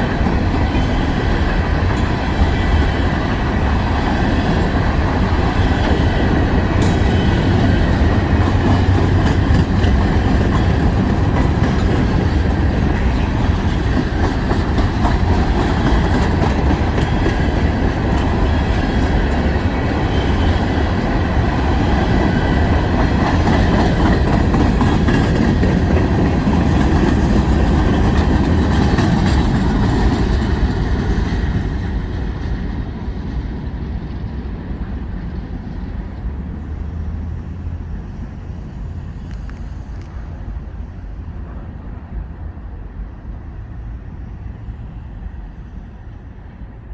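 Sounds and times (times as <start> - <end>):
train wheels clicking and rumbling: 0.0 - 46.9.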